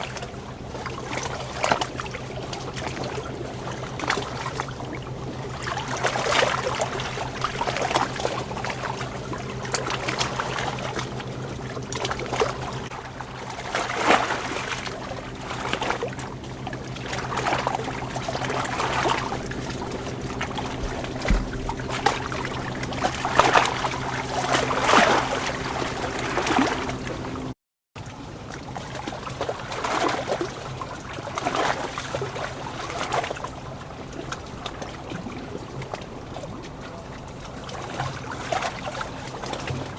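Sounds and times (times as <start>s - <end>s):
steady low hum: 0.1s - 27.6s
running water splashing: 13.5s - 27.5s.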